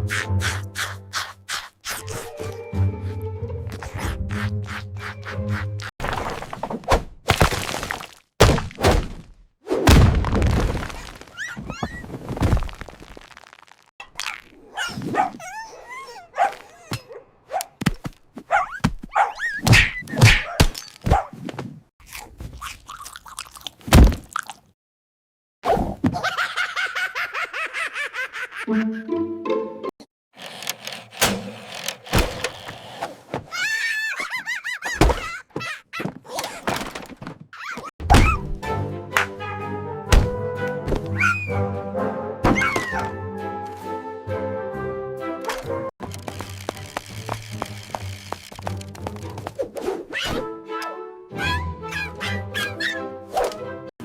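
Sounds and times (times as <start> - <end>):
cartoon knocks and thuds: 34.9 - 37.4
cartoon thumps and knocks: 35.0 - 35.4.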